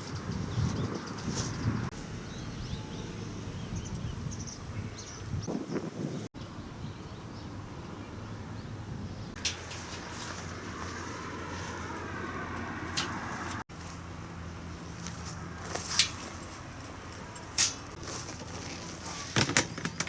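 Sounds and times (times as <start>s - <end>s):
camping gear clicks and knocks: 9.4s - 11.6s, 14.9s - 20.0s.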